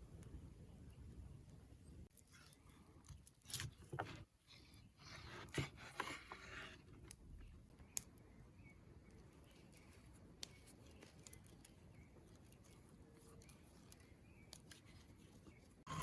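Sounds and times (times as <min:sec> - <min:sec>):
rustling and scraping: 0:02.1 - 0:07.6.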